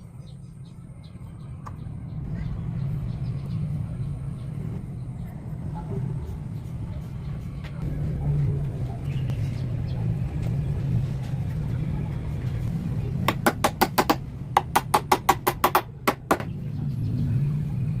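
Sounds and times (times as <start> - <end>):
steady low hum: 0.0 - 18.0
rapid sharp knocks: 13.3 - 16.5.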